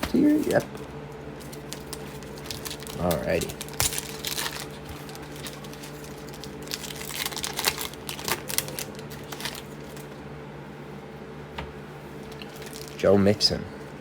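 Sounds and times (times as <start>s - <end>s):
cards being handled: 0.0s - 10.2s
card pack wrapper tearing and crinkling: 1.4s - 10.1s, 12.3s - 13.0s.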